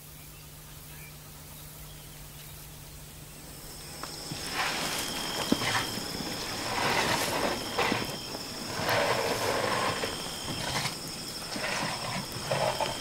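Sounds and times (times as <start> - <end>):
rustling and crackling: 4.0 - 13.0.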